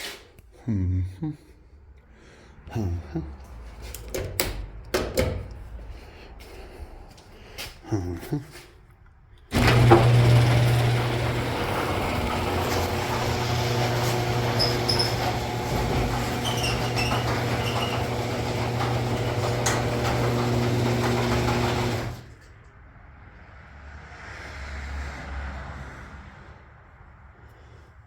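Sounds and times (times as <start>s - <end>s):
garage door clunk: 3.8s - 5.6s, 9.5s - 22.6s
short high squeaks: 9.5s - 19.5s
door rattling along track: 9.5s - 22.5s
garage door motor hum: 9.5s - 22.6s.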